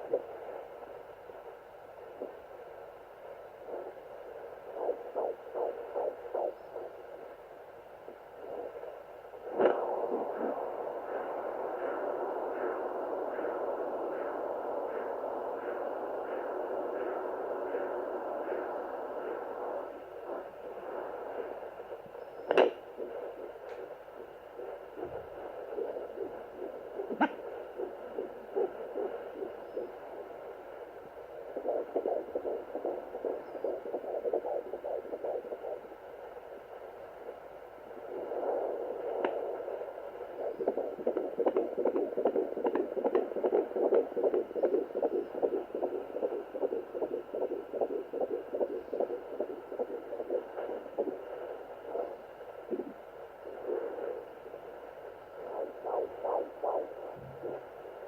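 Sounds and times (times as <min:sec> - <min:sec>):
fetal heartbeat on doppler: 0:00.0 - 0:58.0
sharp clicks: 0:22.5 - 0:22.8.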